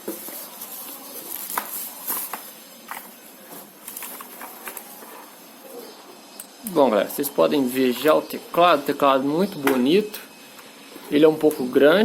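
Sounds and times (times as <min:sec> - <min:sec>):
packaging rustling: 0:00.0 - 0:05.5.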